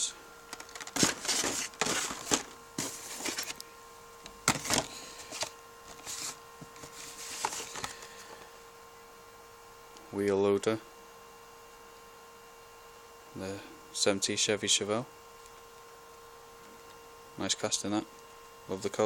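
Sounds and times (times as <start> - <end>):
plastic and card crinkling: 0.5 - 3.7, 4.3 - 8.5.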